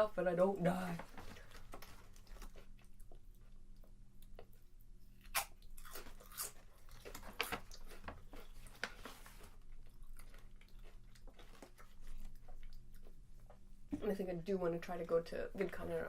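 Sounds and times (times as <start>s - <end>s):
potato chips crunching: 5.2s - 8.9s.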